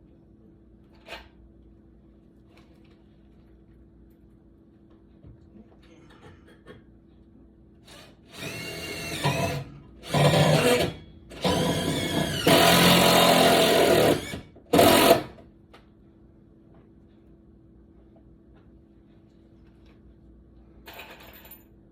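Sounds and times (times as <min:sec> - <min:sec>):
power drill bursts: 0:07.9 - 0:15.4.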